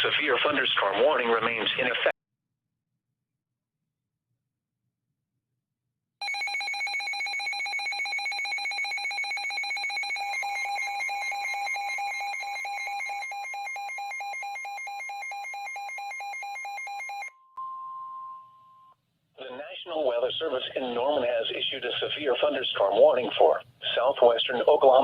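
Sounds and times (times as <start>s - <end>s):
rapidly pulsing electronic beep: 7.7s - 17.3s.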